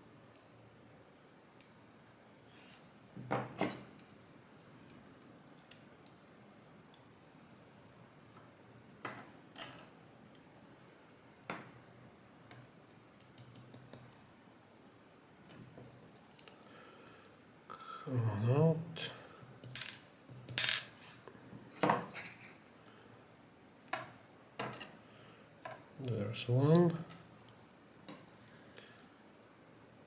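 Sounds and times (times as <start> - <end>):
metal lock parts clicking: 19.6 - 21.0.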